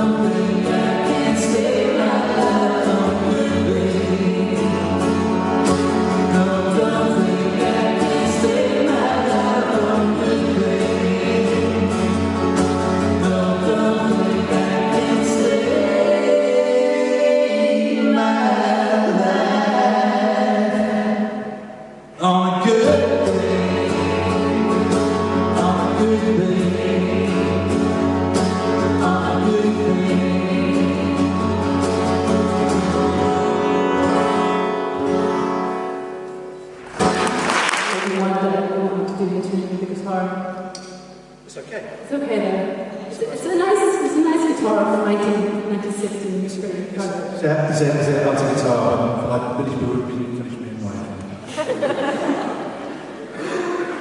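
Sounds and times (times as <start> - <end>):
live band playing: 0.0 - 16.4, 22.9 - 41.4
group singing: 0.0 - 33.2.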